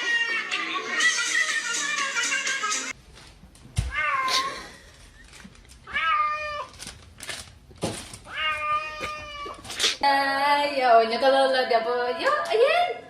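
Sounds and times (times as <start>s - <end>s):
cat meowing: 5.9s - 6.7s, 8.3s - 9.6s.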